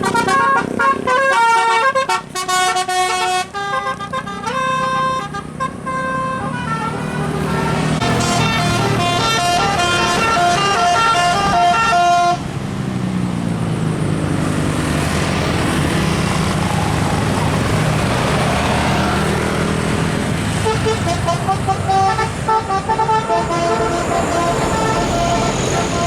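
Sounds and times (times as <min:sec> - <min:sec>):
musical air horn tune: 0:00.0 - 0:12.4, 0:20.6 - 0:26.0
road noise: 0:00.0 - 0:26.0
vehicle engine: 0:00.0 - 0:26.0.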